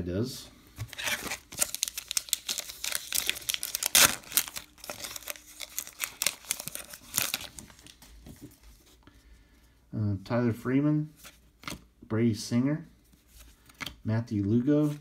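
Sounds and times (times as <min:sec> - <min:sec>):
wrapper tearing and crinkling: 0:00.9 - 0:08.0.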